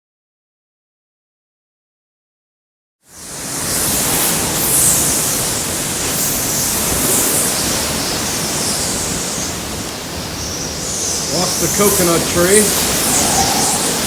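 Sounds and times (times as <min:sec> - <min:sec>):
strong wind gusting: 0:03.4 - 0:14.0.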